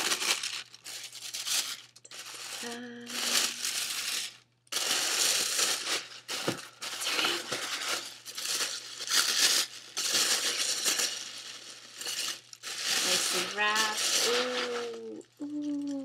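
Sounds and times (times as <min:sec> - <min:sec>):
paper packaging crinkling: 0:00.0 - 0:16.0.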